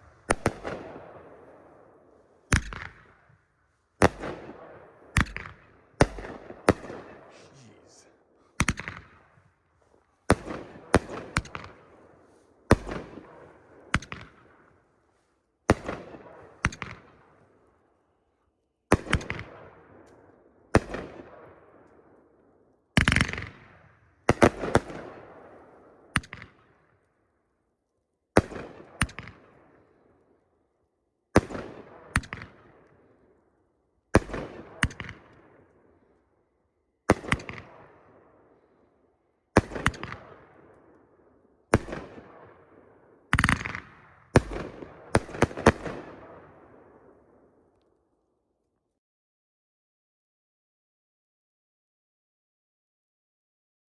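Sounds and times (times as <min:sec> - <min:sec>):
firework bangs with echoes: 0:00.0 - 0:01.8, 0:04.0 - 0:08.0, 0:43.3 - 0:46.4.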